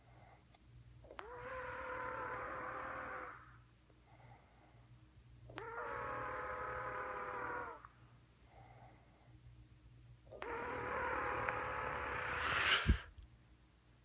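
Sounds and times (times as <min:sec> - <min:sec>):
loud rhythmic snoring: 0:01.1 - 0:03.6, 0:05.5 - 0:07.9, 0:10.3 - 0:13.1.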